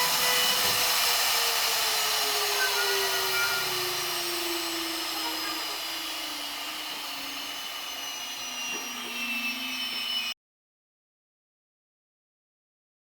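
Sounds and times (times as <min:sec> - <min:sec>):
router spindle whining down: 0:00.0 - 0:10.4.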